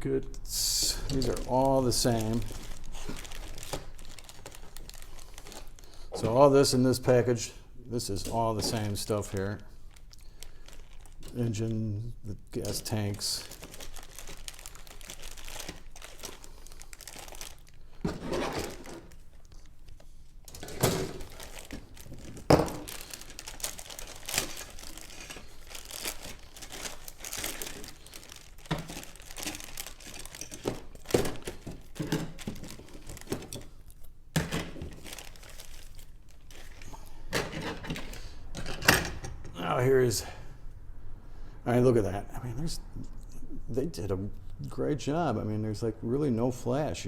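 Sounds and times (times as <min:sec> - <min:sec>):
plastic bags crinkling: 0:00.8 - 0:07.1, 0:08.1 - 0:38.4
plastic parts knocking: 0:20.5 - 0:23.3.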